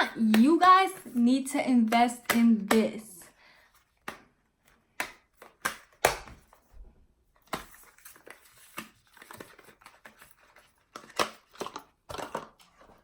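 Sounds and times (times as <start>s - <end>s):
makeup packaging clicks and taps: 0.0s - 1.2s, 1.8s - 3.0s, 3.9s - 6.6s, 7.4s - 12.8s.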